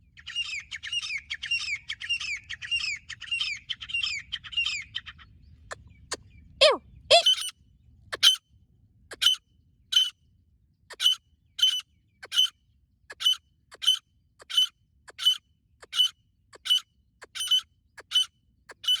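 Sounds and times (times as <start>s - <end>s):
francolins calling: 7.1s - 7.5s, 10.9s - 12.5s, 13.1s - 19.0s.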